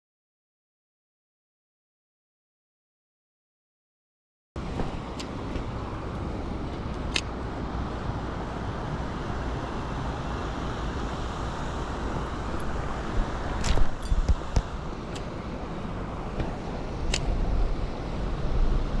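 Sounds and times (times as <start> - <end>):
mountain stream rushing: 4.6 - 19.0
sharp clicks: 4.7 - 7.4, 17.1 - 17.4.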